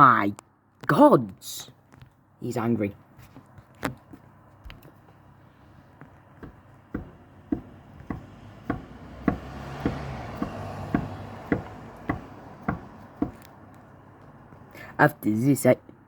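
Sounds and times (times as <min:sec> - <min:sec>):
sharp taps: 0:06.0 - 0:13.8.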